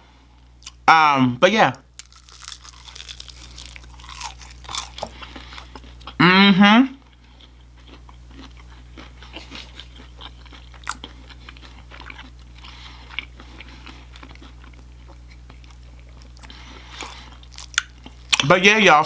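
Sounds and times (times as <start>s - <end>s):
person chewing crunchy food: 0.6s - 0.8s, 1.8s - 6.2s, 7.0s - 18.5s.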